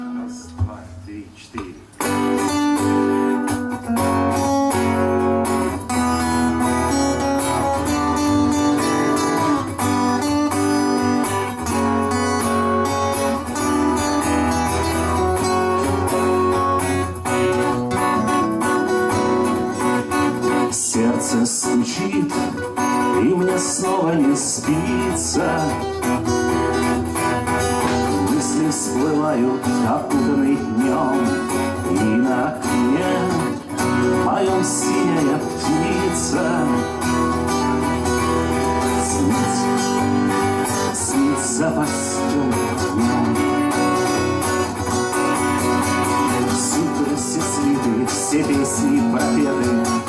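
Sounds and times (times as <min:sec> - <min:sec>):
guitar music: 0:00.0 - 0:50.0
person singing: 0:19.5 - 0:26.8, 0:27.7 - 0:44.4, 0:45.8 - 0:50.0.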